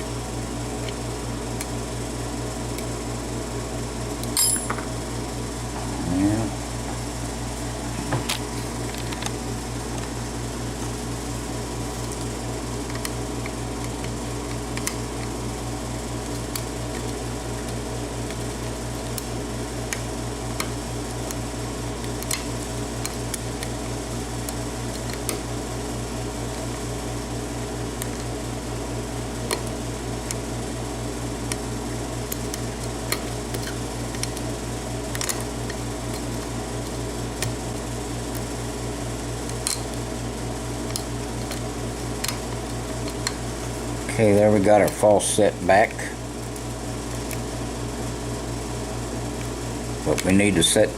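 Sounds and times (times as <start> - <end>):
steady mechanical hum: 0.0 - 50.9.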